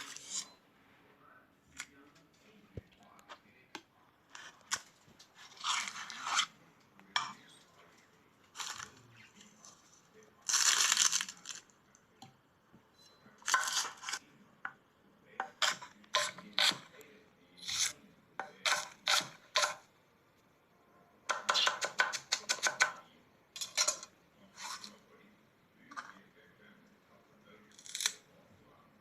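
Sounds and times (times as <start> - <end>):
knife chopping and scraping: 13.4 - 14.2, 15.4 - 16.9, 17.6 - 19.8, 21.3 - 23.0.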